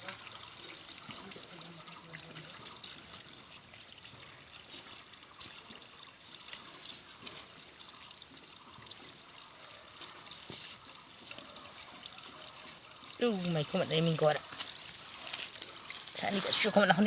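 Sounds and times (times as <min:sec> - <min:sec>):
water trickling: 0:00.0 - 0:17.0.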